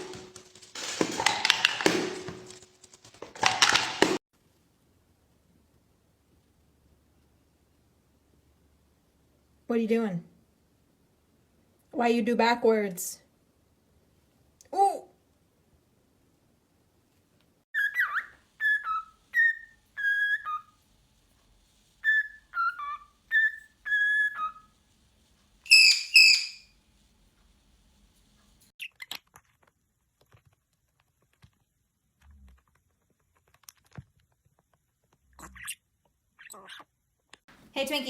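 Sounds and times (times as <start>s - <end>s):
parrot whistling: 17.8s - 20.8s, 22.0s - 24.7s, 25.7s - 26.7s
harsh parrot call: 25.7s - 26.7s.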